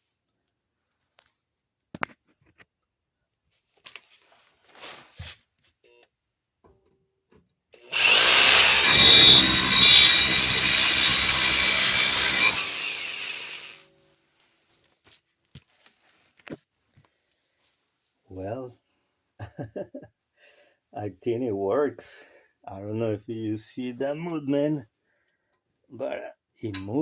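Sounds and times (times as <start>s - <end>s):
rotary hammer chiseling metal: 7.9s - 13.7s.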